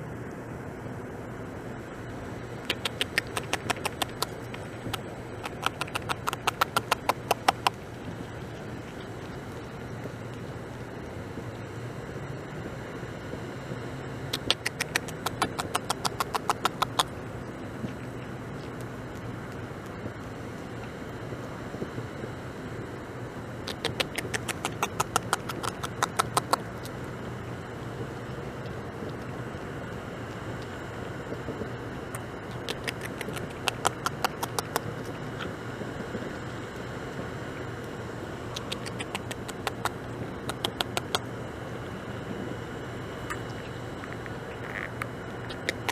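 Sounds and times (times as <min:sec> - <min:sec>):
beaver gnawing wood: 0:02.6 - 0:09.7, 0:14.3 - 0:17.2, 0:23.7 - 0:27.0, 0:32.4 - 0:35.5, 0:38.5 - 0:41.2, 0:43.6 - 0:45.9.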